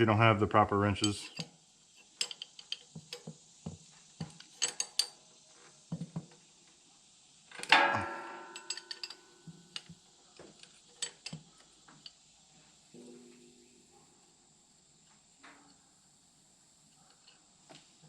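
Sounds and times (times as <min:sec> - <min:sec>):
metal wrenches clinking: 0:04.6 - 0:05.2, 0:07.5 - 0:09.3
loud ringing metallic clang: 0:07.7 - 0:09.5, 0:13.0 - 0:13.9.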